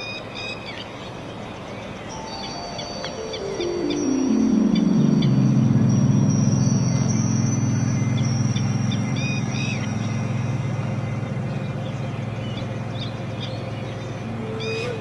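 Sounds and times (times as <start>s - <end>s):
steady low hum: 3.1s - 15.0s
small birds chirping: 7.0s - 15.0s.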